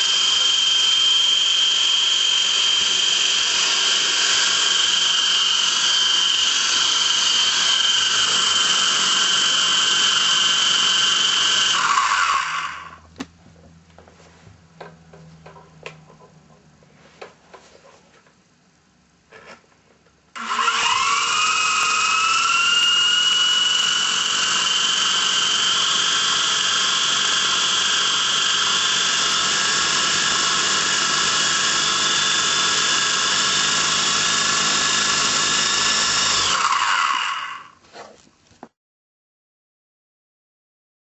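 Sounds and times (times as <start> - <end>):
rc helicopter motor whine: 0.0 - 13.0, 20.4 - 37.8.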